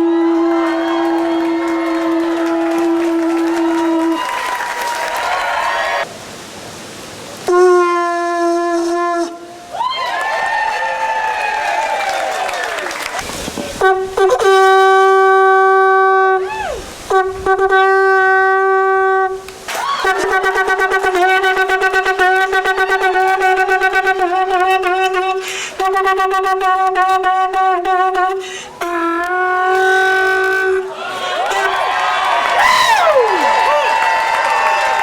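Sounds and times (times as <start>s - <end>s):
conch shell horn blowing: 0.0s - 4.8s, 7.4s - 9.7s, 13.7s - 31.8s.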